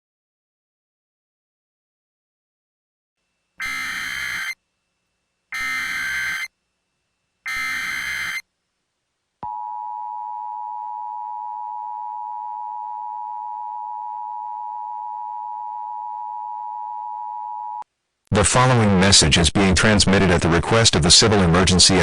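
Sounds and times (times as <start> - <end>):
harsh digital data bursts: 3.6 - 4.6, 5.5 - 6.5, 7.5 - 8.4
two-tone alert signal: 3.6 - 4.6, 5.5 - 6.5, 7.5 - 8.4.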